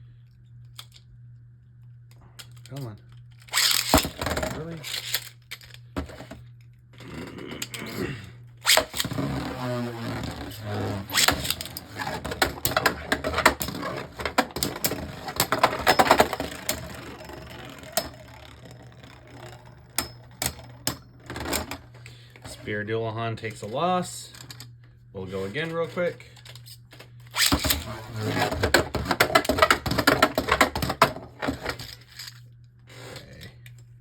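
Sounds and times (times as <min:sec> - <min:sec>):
spinning tops whirring and clacking: 0:03.4 - 0:06.4, 0:08.6 - 0:22.0, 0:27.2 - 0:32.4
spinning tops launched with snap: 0:03.5 - 0:05.3.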